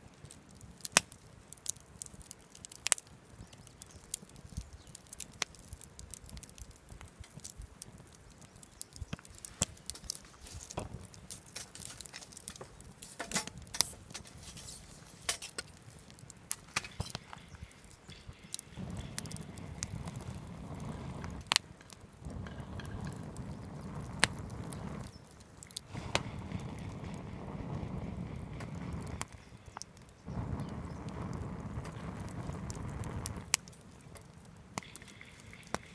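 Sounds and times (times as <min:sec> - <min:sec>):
wood fire crackling: 0:00.0 - 0:35.9
steady noise: 0:18.8 - 0:21.5, 0:30.3 - 0:33.6.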